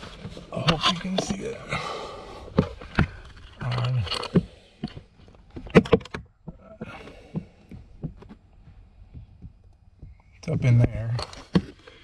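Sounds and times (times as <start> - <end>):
hands handling plastic parts: 0.0 - 1.6, 2.5 - 6.6.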